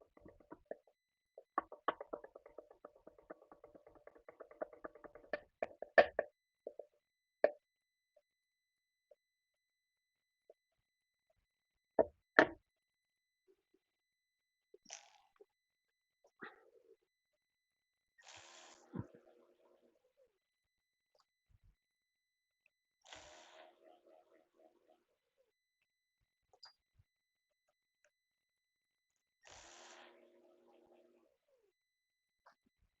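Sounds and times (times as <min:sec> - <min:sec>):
sharp metallic knocks: 0:00.0 - 0:07.6.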